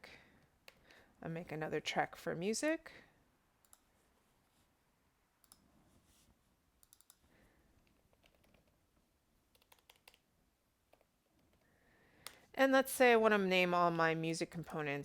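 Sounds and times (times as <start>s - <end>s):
faint mouse and keyboard clicks: 0.6s - 1.0s, 3.6s - 3.9s, 5.4s - 6.2s, 6.8s - 8.8s, 9.5s - 10.3s, 10.9s - 12.5s.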